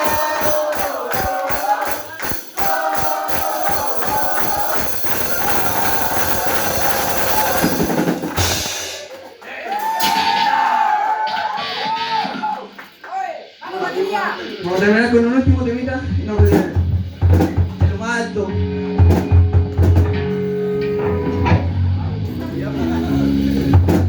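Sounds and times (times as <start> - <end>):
voices singing: 0.0 - 8.2
drumbeat with cymbals: 0.0 - 10.6, 12.9 - 18.2, 22.6 - 24.0
punk rock band playing: 0.0 - 24.0.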